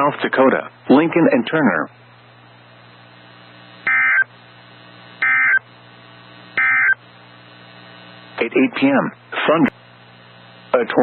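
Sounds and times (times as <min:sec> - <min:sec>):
faint radio hum and hiss: 0:00.0 - 0:11.0
digital data tone bursts: 0:03.8 - 0:04.3, 0:05.2 - 0:05.7, 0:06.5 - 0:07.0.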